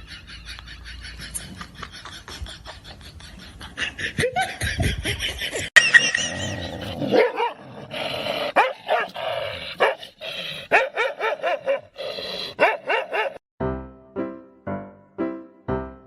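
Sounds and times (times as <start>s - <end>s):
dog barking and yipping: 6.4s - 7.6s, 8.5s - 10.0s, 10.7s - 12.0s, 12.6s - 13.4s.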